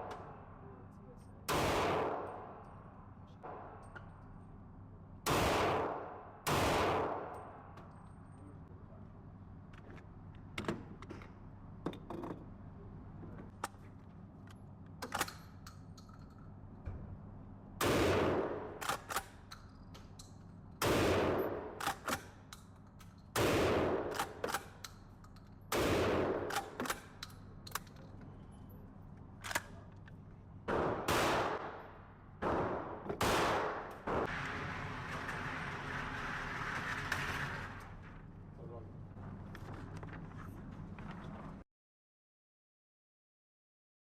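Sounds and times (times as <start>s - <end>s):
loud gunshots: 1.5s - 2.6s, 5.3s - 7.4s, 17.8s - 18.8s, 20.8s - 21.8s, 23.4s - 24.4s, 25.7s - 26.8s, 30.7s - 35.3s
quieter distant gunshots: 1.5s - 2.6s, 5.3s - 7.8s, 17.8s - 18.8s, 20.8s - 21.8s, 23.4s - 24.4s, 25.7s - 26.8s, 30.7s - 36.0s.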